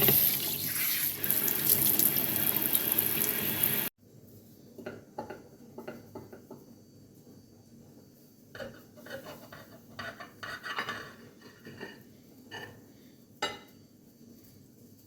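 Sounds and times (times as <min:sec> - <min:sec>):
tap running into sink: 0:00.0 - 0:00.6
dishes clinking and knocking: 0:08.6 - 0:12.8, 0:13.4 - 0:13.7.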